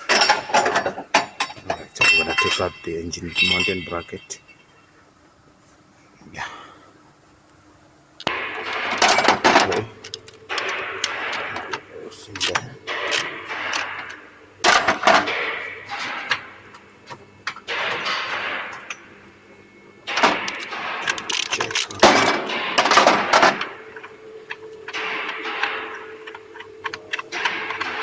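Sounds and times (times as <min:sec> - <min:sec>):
metal clinks: 0:00.1 - 0:04.8.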